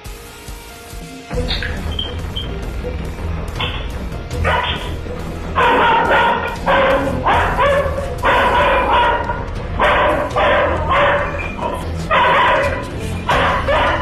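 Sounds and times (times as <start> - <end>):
background music: 0.0 - 14.0
dog barking: 4.4 - 14.0.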